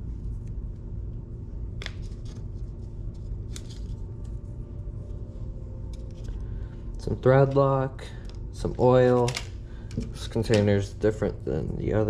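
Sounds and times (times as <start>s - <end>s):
steady low hum: 0.0s - 12.0s
packaging rustling clicks: 9.1s - 10.7s.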